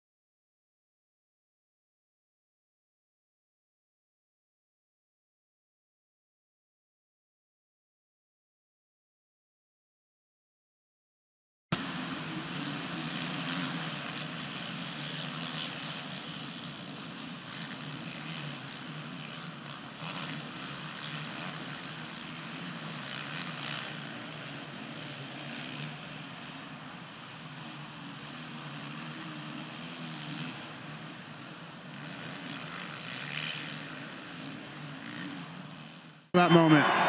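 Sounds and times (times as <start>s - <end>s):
dirt bike engines racing: 11.8s - 37.0s.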